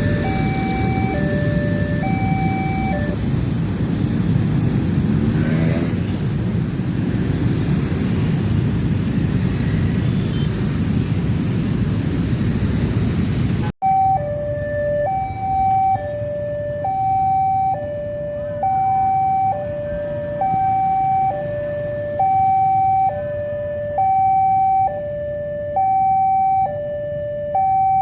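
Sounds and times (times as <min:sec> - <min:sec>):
engine note rising: 0:00.0 - 0:03.6
two-tone crossing siren: 0:00.0 - 0:04.2, 0:13.8 - 0:28.0
road traffic rumble: 0:00.0 - 0:28.0.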